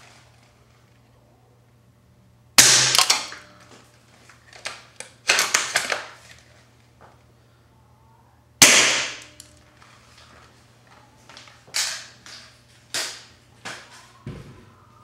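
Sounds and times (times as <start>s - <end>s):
airsoft rifle firing crack: 2.6s - 3.4s, 8.6s - 9.3s.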